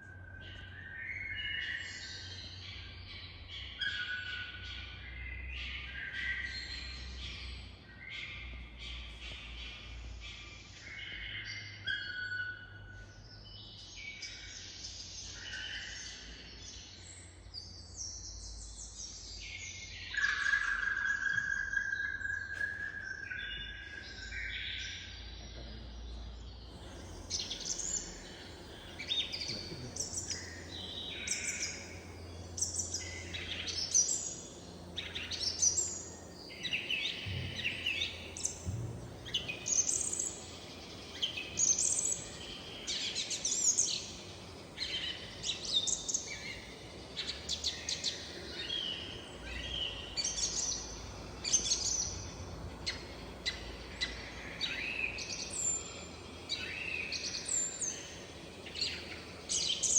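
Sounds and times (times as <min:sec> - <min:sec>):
birdsong chirps and whistles: 0:00.0 - 0:59.9
faint low hum: 0:21.0 - 0:59.9.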